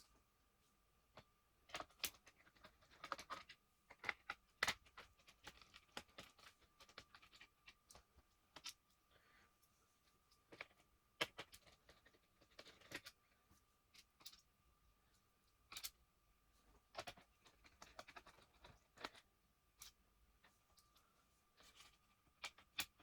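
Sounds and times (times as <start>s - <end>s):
small clicks and scrapes of tools: 10.3s - 13.2s, 16.8s - 21.0s.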